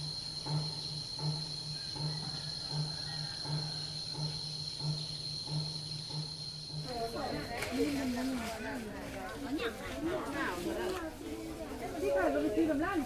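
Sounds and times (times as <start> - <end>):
insect drone: 0.0 - 8.7
distant temple drum beats: 0.0 - 13.0.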